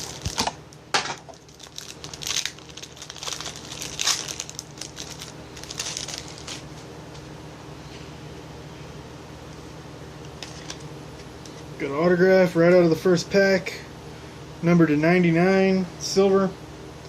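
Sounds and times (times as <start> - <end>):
foil wrapper crinkling: 0.0 - 6.8
steady low hum: 0.0 - 17.0.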